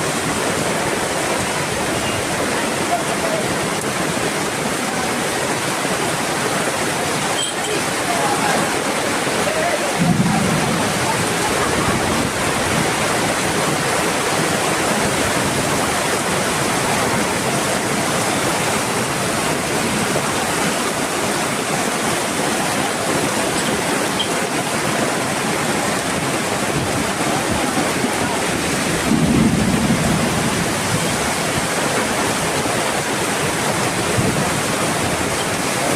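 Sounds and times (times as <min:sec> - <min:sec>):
heavy rain pouring: 0:00.0 - 0:35.9.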